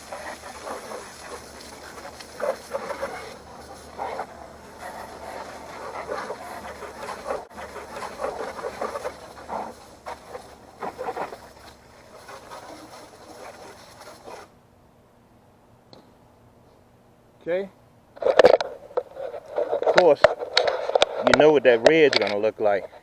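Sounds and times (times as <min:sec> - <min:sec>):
hose water spraying and splashing: 0:00.0 - 0:14.5.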